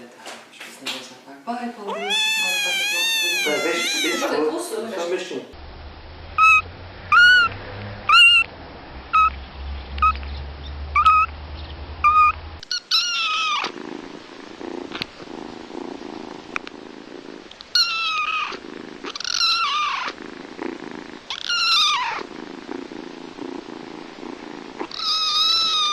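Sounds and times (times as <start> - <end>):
kitten purring: 1.8 - 4.5, 9.2 - 9.4, 12.0 - 25.9
kittens mewing: 1.8 - 4.6, 6.4 - 8.5, 12.0 - 13.8, 17.3 - 20.2, 21.2 - 22.3, 24.7 - 25.9.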